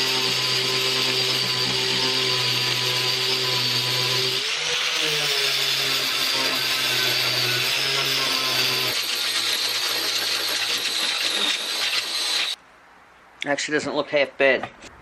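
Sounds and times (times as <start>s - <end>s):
power grinder grinding metal: 0.0s - 12.6s.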